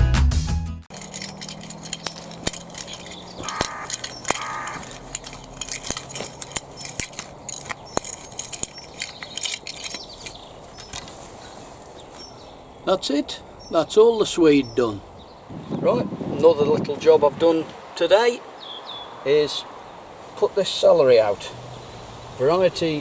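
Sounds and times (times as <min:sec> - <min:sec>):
soil crunching and trowel clicking: 0:00.9 - 0:12.5.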